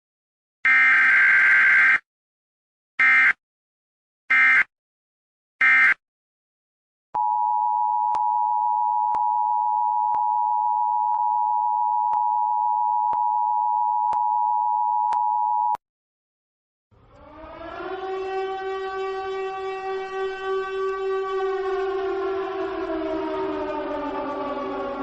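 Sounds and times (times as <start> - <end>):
steady electronic tone: 17.0 - 25.0.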